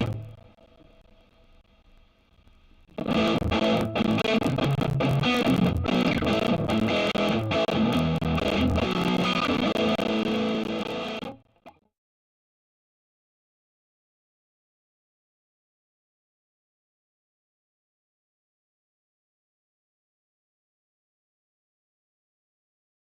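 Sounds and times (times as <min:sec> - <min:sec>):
faint amp hum: 0:00.0 - 0:11.6
distorted electric guitar riffs: 0:00.0 - 0:11.8.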